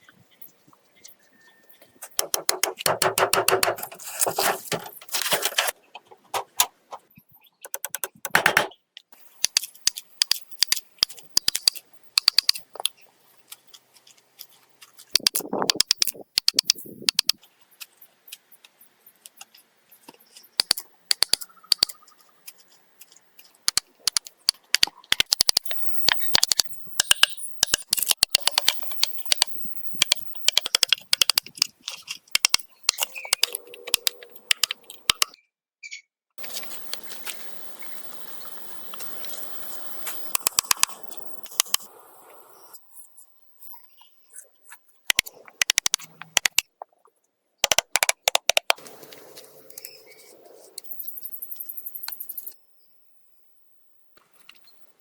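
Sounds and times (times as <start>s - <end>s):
sharp clicks and clattering: 2.0s - 8.8s, 15.2s - 17.4s, 23.7s - 35.3s, 45.1s - 46.7s, 47.6s - 48.8s.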